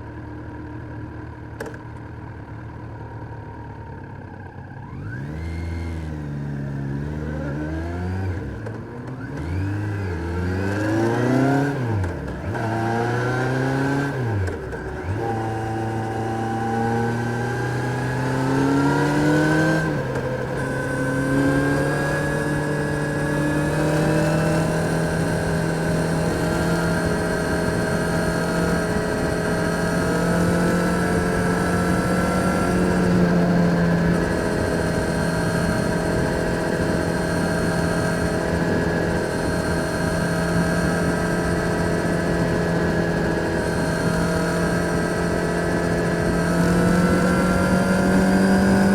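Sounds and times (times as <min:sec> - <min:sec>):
motorcycle engine revving through gears: 0:04.0 - 0:48.9.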